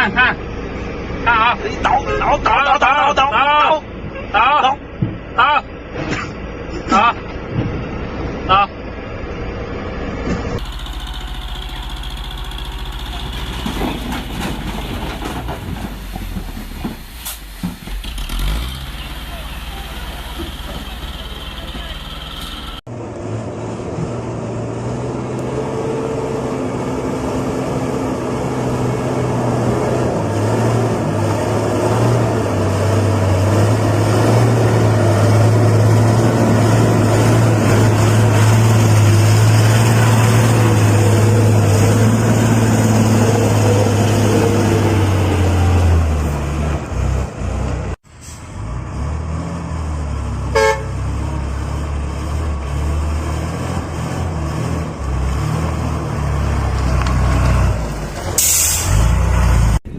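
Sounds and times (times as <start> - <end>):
diesel truck engine under load: 0.0 - 59.9
vehicle horn toot: 50.5 - 51.0.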